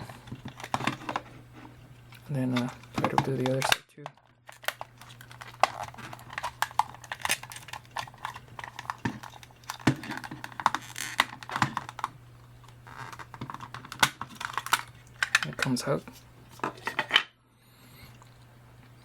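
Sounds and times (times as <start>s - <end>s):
plastic clips clicking and creaking: 2.5s - 12.1s, 12.9s - 15.8s.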